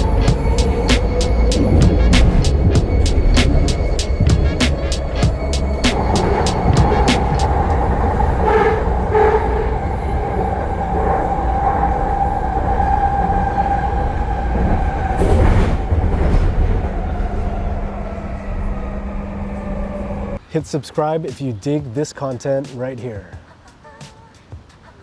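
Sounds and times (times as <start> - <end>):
vehicle low rumble with whine: 0.0 - 12.1.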